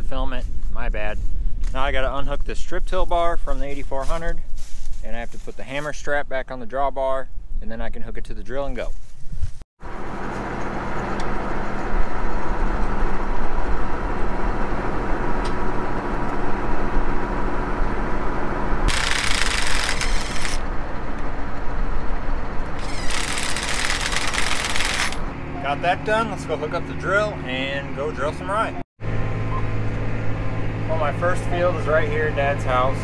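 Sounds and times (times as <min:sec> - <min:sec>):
tractor diesel engine idling: 0:25.2 - 0:33.0.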